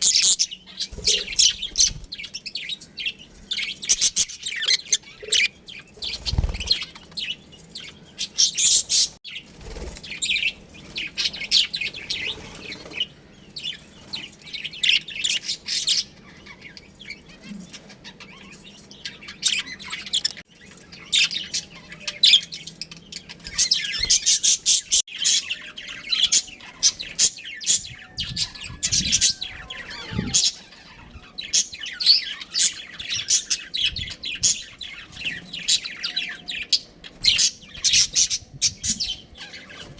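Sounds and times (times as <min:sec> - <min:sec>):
budgerigars chirping: 0:00.0 - 0:09.2.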